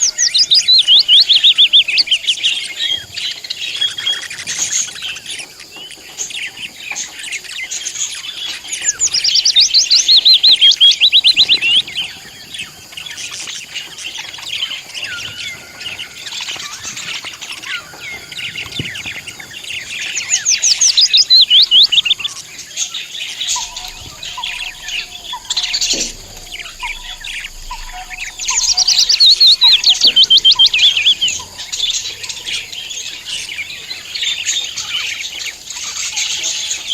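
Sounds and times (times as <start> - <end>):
budgies chattering and warbling: 0.0 - 36.9
rapid falling chirps: 23.4 - 35.2.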